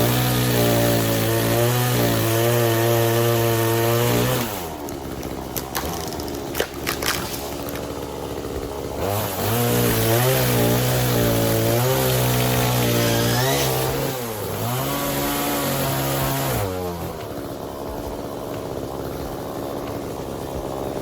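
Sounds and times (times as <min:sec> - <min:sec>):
chainsaw revving: 0:00.0 - 0:21.0
sharp cracks: 0:04.6 - 0:08.9.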